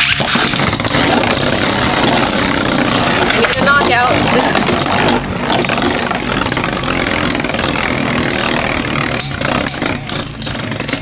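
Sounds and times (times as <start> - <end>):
spinning tops whirring and scraping: 0.0 - 11.0
sharp plastic clacks: 9.0 - 11.0.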